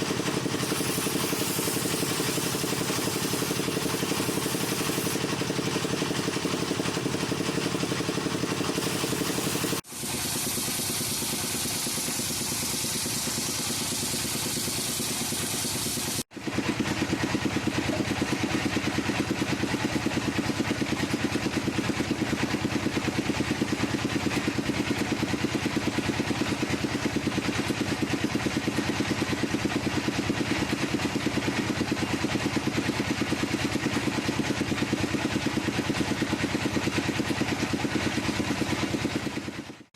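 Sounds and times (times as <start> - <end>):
wood lathe running: 0.0 - 15.2.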